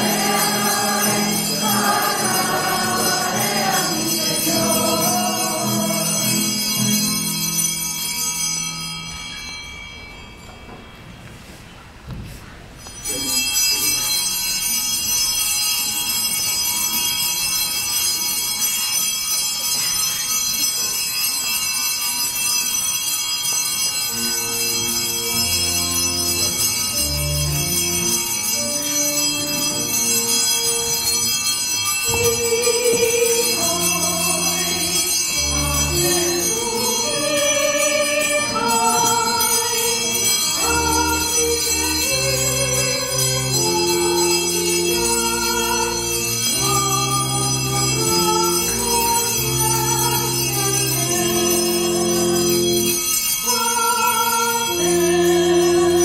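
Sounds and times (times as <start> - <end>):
pipe organ chords: 0.0 - 7.4, 24.2 - 53.1
bells ringing: 0.0 - 11.9, 12.7 - 56.0.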